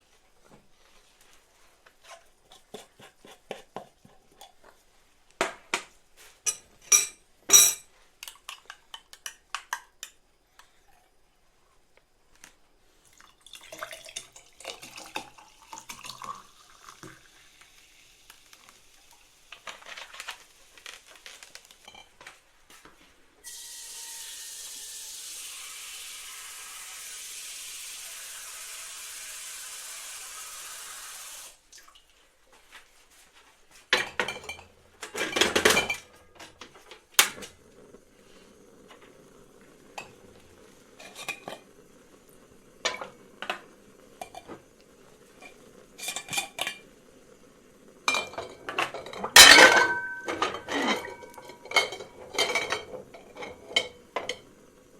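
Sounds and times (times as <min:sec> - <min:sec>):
liquid pouring into container: 0:13.0 - 0:19.3.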